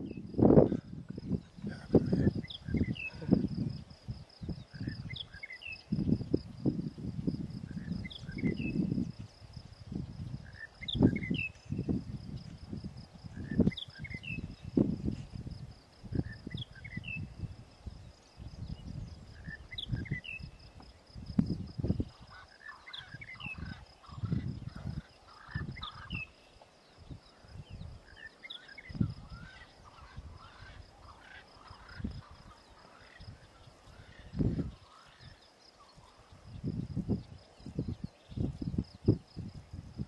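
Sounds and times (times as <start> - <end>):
high insect-like whine: 0.0 - 40.0
bird chirping: 1.2 - 6.2, 13.4 - 14.8, 16.2 - 21.0, 21.8 - 38.8.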